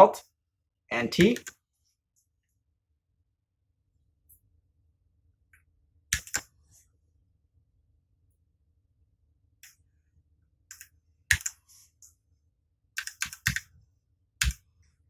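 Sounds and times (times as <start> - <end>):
mechanical keyboard key presses: 1.1 - 1.5, 11.3 - 11.5, 13.0 - 13.6.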